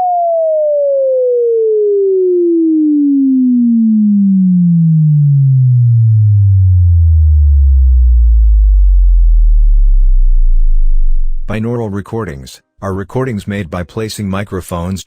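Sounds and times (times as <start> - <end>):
sine tone sweeping down: 0.0 - 11.5.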